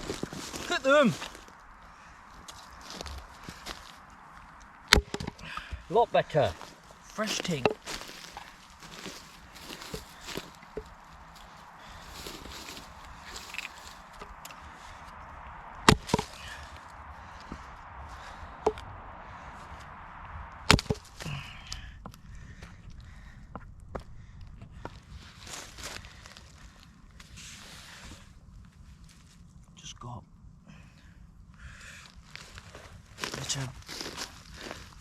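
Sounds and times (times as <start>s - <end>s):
faint crackles: 0.0s - 35.0s
wood being chopped: 4.9s - 5.4s, 15.9s - 16.3s, 20.7s - 21.1s
soft footsteps on woodland floor: 5.9s - 14.4s.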